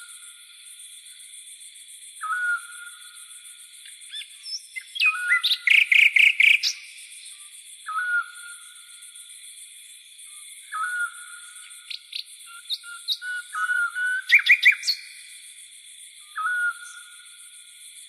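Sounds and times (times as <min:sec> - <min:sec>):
insect chorus: 0:00.0 - 0:18.0
rapid bird chirps: 0:04.1 - 0:07.3, 0:10.7 - 0:15.1.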